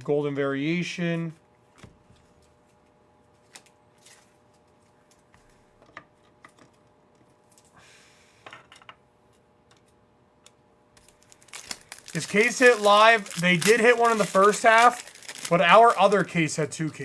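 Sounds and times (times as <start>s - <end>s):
trading cards rustling and clicking: 11.0s - 17.0s.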